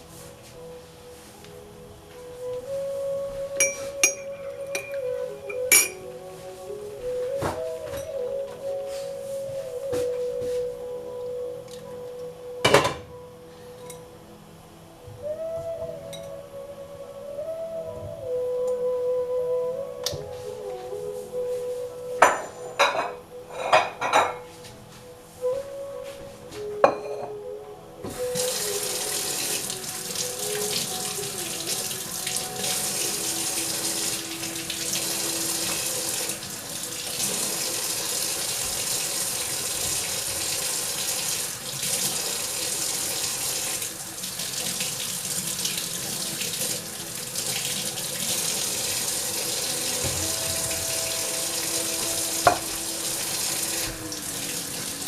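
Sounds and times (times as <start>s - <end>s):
tap water running into a sink: 28.1s - 55.0s.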